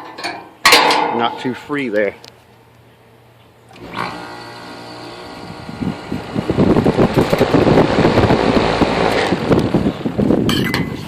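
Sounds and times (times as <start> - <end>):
machine hum with pitched tone: 3.7 - 10.6
irregular rushing noise: 5.2 - 10.4.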